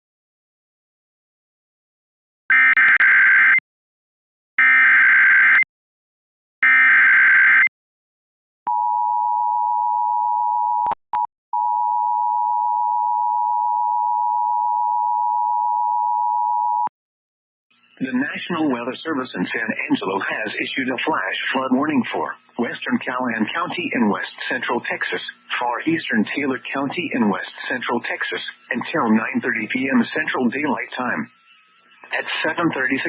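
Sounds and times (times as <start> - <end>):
harsh data bursts: 17.7 - 33.0.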